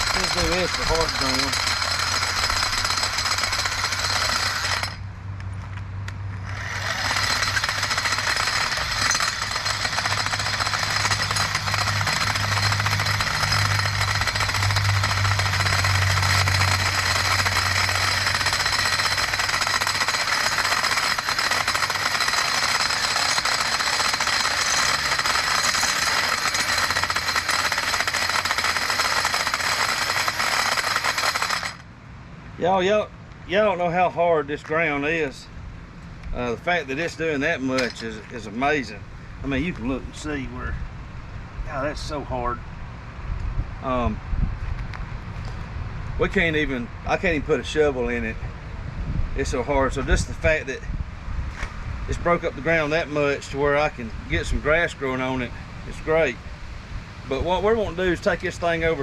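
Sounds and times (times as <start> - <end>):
cultivator tines chopping clay: 0.0 - 5.0, 6.8 - 31.8.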